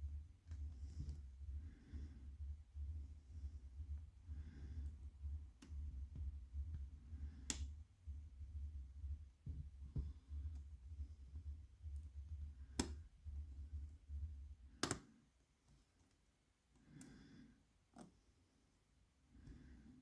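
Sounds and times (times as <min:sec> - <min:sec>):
steady low rumble: 0:00.0 - 0:14.6.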